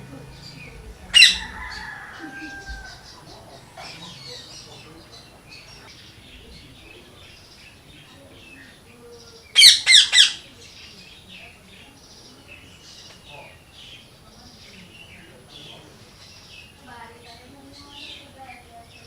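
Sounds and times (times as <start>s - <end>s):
parrot squawking: 0.0s - 7.2s, 9.5s - 10.6s
small birds chirping: 0.0s - 19.0s.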